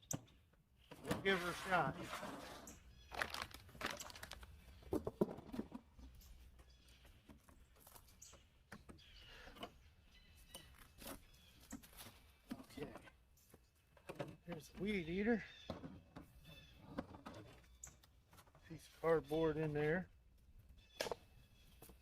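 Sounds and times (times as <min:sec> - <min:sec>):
crinkling: 0:01.5 - 0:05.8
tool kit handling clicks and knocks: 0:11.0 - 0:15.0.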